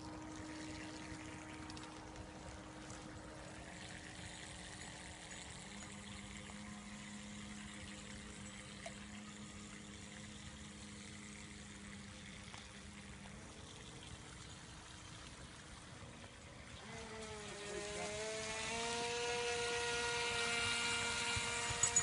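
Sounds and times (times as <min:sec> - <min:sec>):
boat motor running: 0:00.0 - 0:22.0.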